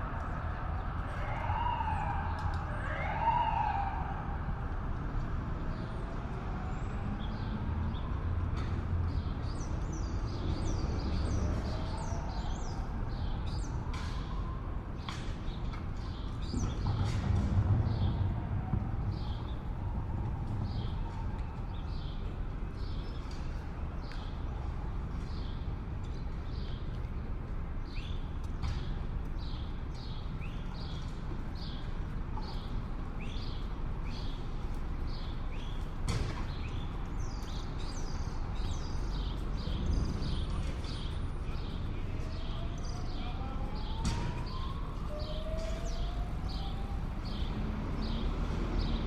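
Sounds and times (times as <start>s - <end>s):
low traffic rumble: 0.0s - 49.0s
small birds chirping: 27.9s - 49.0s.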